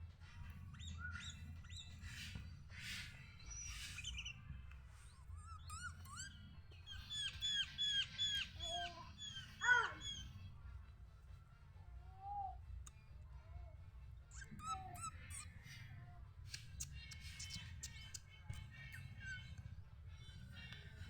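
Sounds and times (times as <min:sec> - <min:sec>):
bird whistling song: 0:00.8 - 0:10.4, 0:12.1 - 0:13.5, 0:14.3 - 0:15.8, 0:16.5 - 0:19.6.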